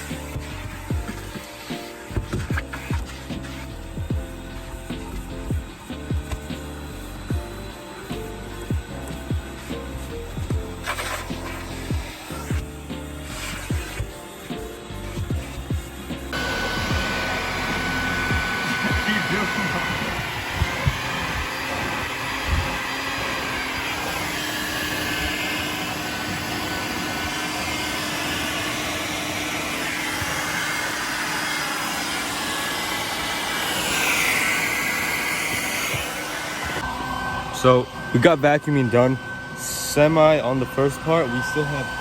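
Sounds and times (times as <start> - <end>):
vacuum cleaner running: 0.0 - 42.0.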